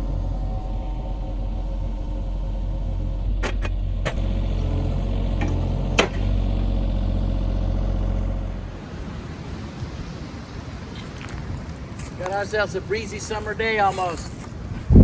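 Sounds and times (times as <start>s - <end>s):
engine running: 0.0s - 10.3s.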